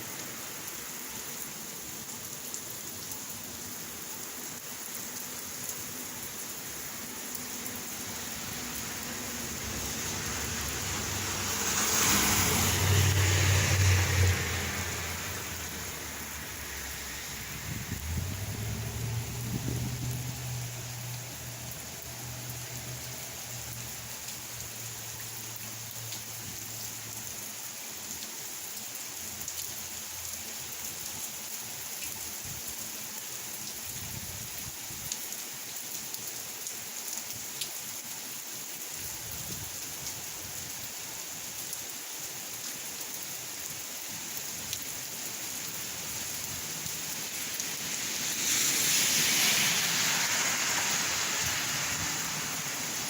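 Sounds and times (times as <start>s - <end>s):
steady rain falling: 0.0s - 53.0s.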